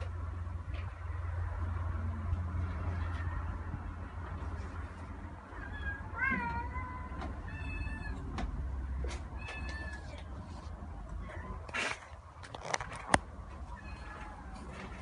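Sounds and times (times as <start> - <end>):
cat meowing: 5.6 - 8.3, 9.4 - 10.3, 13.7 - 14.8.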